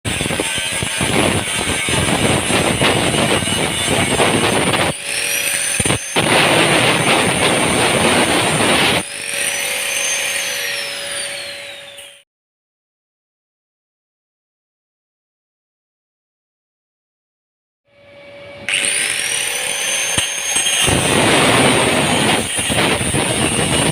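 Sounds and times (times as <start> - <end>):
high whistle: 9.6 - 12.2.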